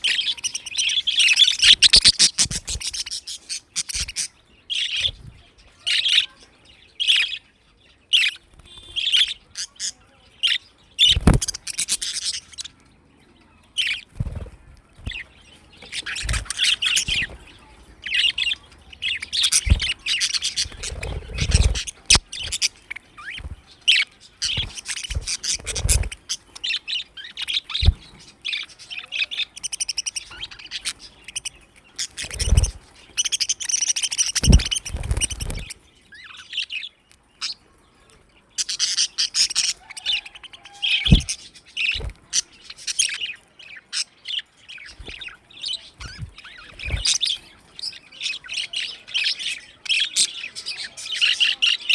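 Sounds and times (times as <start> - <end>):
budgerigars chirping: 0.0 - 12.9, 13.8 - 37.6, 38.6 - 51.9.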